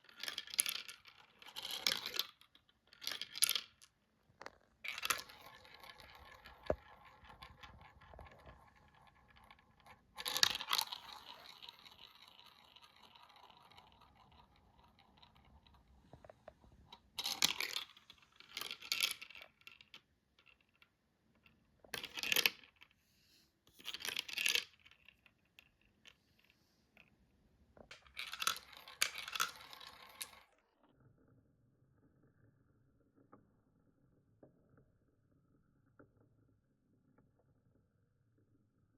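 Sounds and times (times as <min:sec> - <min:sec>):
marbles clattering against track: 0:00.0 - 0:16.2, 0:17.2 - 0:20.9, 0:21.9 - 0:22.9, 0:23.8 - 0:26.2, 0:27.9 - 0:31.3
marbles rolling on track: 0:00.0 - 0:16.2, 0:16.9 - 0:20.9, 0:21.9 - 0:22.8, 0:23.8 - 0:26.2, 0:27.9 - 0:31.3.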